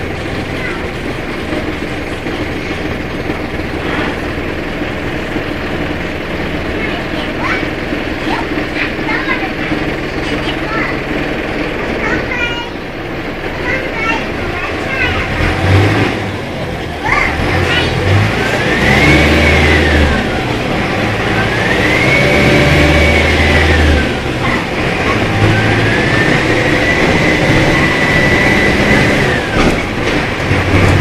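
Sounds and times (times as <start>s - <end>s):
bus engine pulling under load: 0.0s - 31.0s.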